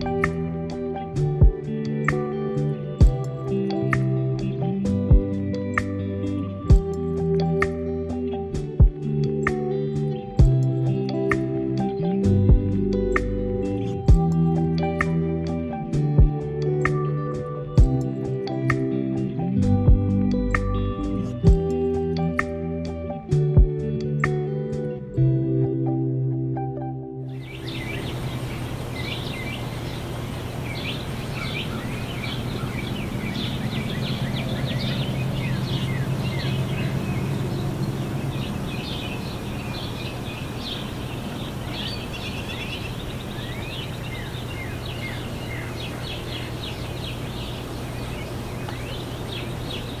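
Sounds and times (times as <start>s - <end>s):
birds chirping: 0.0s - 8.3s, 27.3s - 50.0s
steady low hum: 27.4s - 50.0s.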